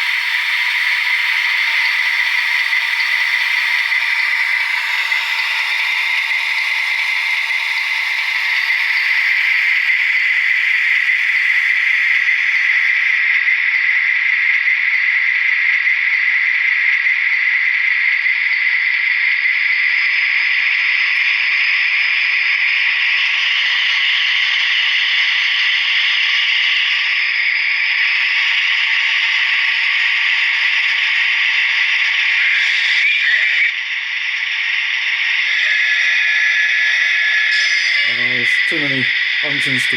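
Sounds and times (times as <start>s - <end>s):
thin diesel engine drone from speaker: 1.2s - 13.1s, 38.0s - 39.9s.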